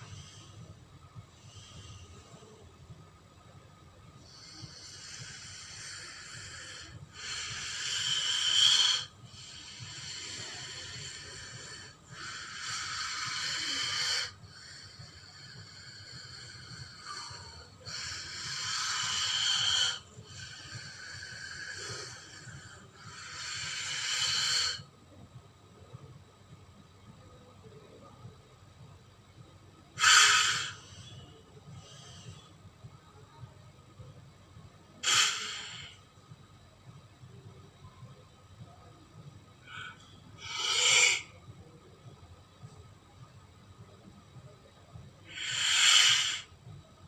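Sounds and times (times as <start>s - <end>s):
snake hissing: 4.3s - 24.9s, 30.0s - 31.2s, 35.0s - 36.0s, 39.6s - 41.4s, 45.3s - 46.5s.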